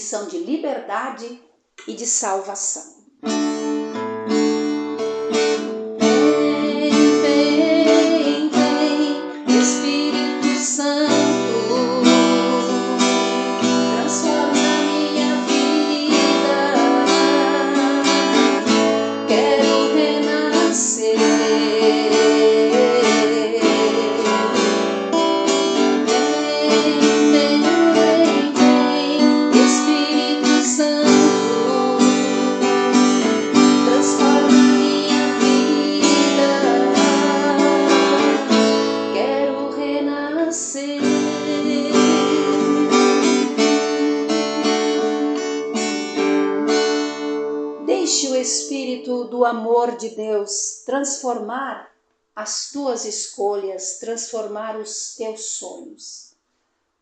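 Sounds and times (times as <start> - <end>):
strummed acoustic guitar: 3.2 - 49.0
woman singing: 6.0 - 45.3, 47.8 - 51.8.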